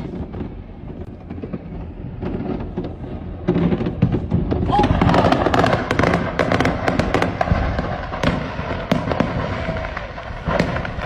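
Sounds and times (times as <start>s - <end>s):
fireworks bangs and crackles: 0.0s - 11.0s.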